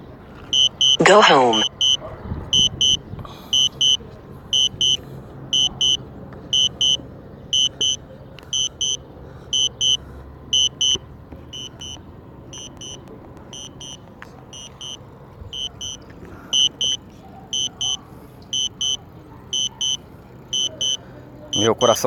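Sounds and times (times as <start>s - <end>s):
short high double beeps: 0.5s - 2.0s, 2.6s - 5.0s, 5.6s - 6.0s, 6.6s - 7.0s, 7.6s - 9.0s, 9.6s - 10.0s, 10.6s - 11.0s, 11.6s - 12.0s, 12.6s - 13.0s, 13.6s - 14.0s, 14.6s - 15.0s, 15.6s - 17.0s, 17.6s - 19.0s, 19.6s - 21.0s.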